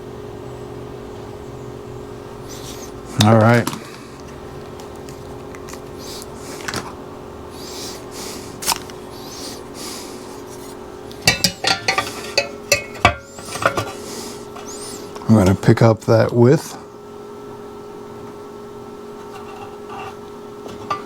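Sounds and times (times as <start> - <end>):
steady faint hum: 0.0 - 21.0
hand tools clicking and clattering: 11.1 - 15.3.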